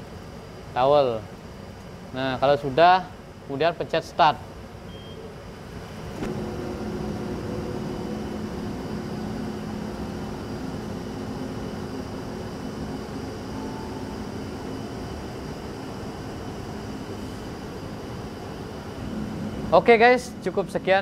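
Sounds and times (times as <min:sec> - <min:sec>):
tumble dryer humming: 0:05.8 - 0:21.0.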